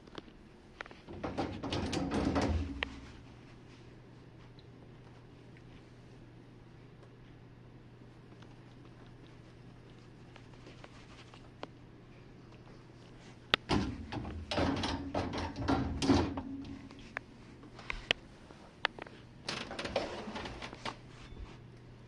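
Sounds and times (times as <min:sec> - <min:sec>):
steady low hum: 0:00.0 - 0:22.0
dishwasher racks clattering: 0:01.1 - 0:03.2, 0:13.7 - 0:17.1.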